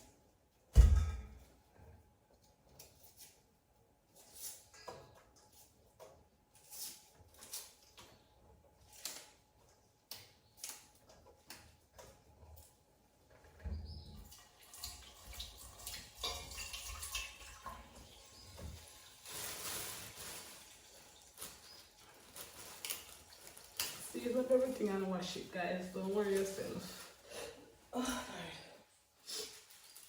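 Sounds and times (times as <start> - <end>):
kitchen handling clicks and knocks: 0.8 - 1.4
tap water splashing in sink: 14.2 - 18.8.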